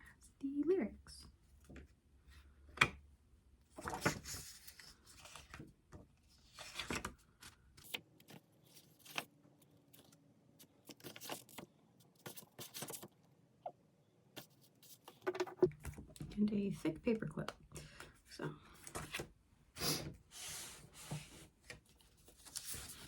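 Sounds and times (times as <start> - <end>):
paper rustling: 3.8 - 5.6, 6.4 - 13.1, 20.5 - 23.0.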